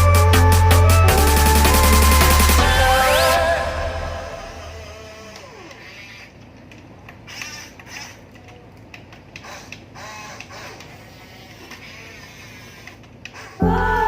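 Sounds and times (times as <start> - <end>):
small electric motors whirring: 5.0 - 13.6.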